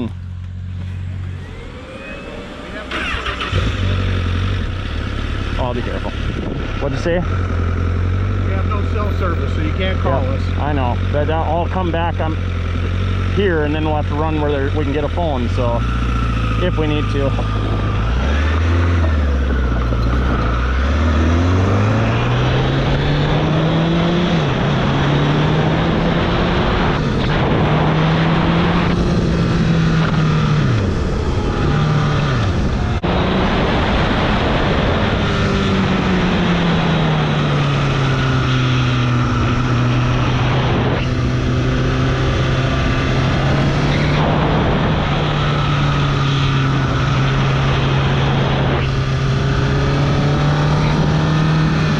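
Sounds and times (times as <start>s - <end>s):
motorcycle engine accelerating: 0.0s - 51.9s
wind noise: 5.9s - 7.7s, 15.8s - 51.9s.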